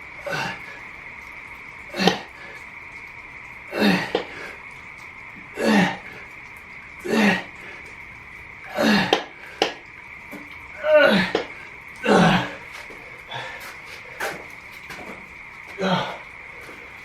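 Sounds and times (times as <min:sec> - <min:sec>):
steady high hum: 0:00.0 - 0:17.0
man grunting exhales: 0:13.3 - 0:13.7, 0:15.8 - 0:16.2.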